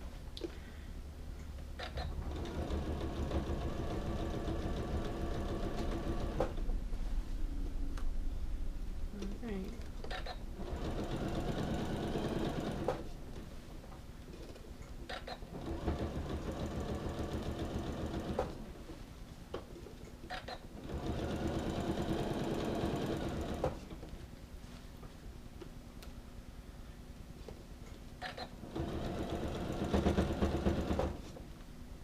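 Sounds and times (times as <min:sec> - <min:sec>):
sewing machine stitching: 0:01.8 - 0:06.6, 0:10.2 - 0:13.1, 0:15.1 - 0:18.6, 0:20.3 - 0:23.8, 0:28.2 - 0:31.2.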